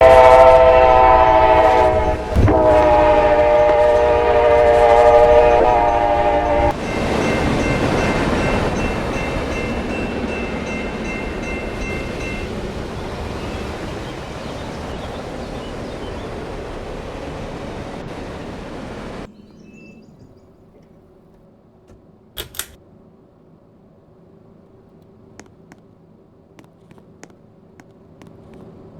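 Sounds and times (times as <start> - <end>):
loud chord-like horn: 0.0 - 6.8.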